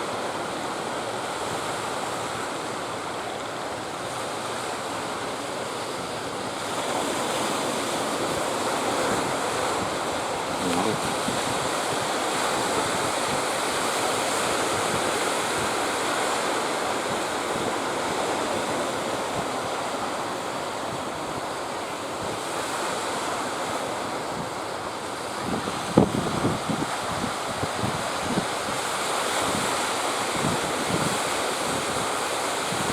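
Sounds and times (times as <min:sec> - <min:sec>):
sea surf breaking: 0:00.0 - 0:32.9
wind buffeting microphone: 0:08.1 - 0:21.5, 0:25.2 - 0:32.9.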